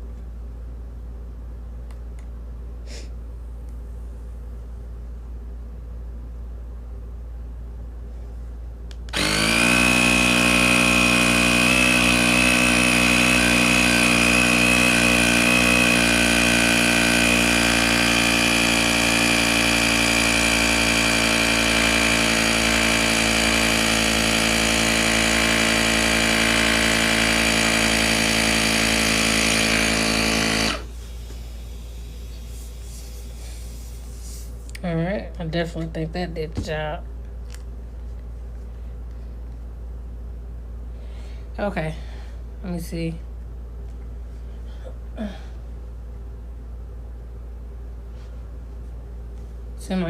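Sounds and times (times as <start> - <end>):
tyre inflator compressor running: 8.9 - 34.8.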